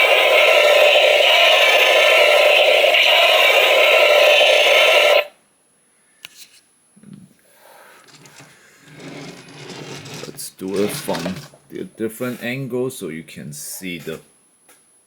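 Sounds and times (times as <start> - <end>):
toy sound effect harsh rush: 0.0 - 5.3.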